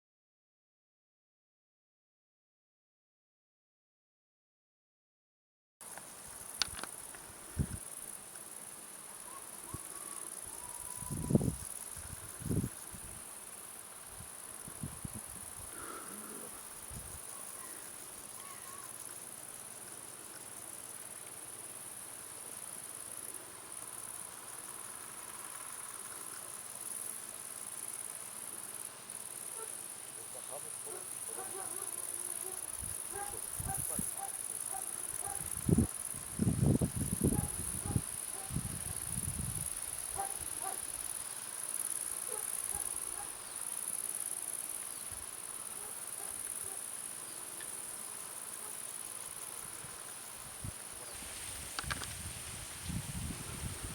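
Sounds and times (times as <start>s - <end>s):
insect chirring: 5.8s - 53.9s.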